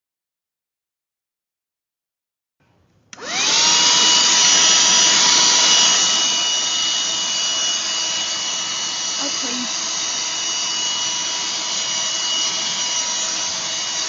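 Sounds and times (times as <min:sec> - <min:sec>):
handheld vacuum motor whine: 0:03.1 - 0:14.0.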